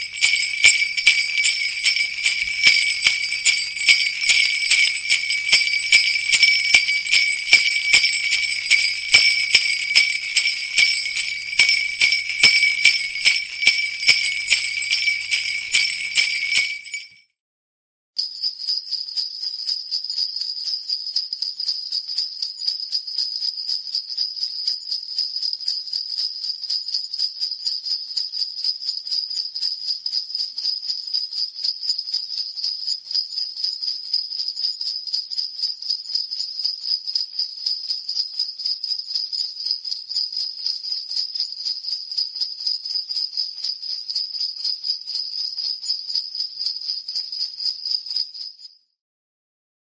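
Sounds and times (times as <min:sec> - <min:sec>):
shimmer of small bells: 0:00.0 - 0:17.2
sleigh bells shaken rhythmically: 0:00.0 - 0:17.2.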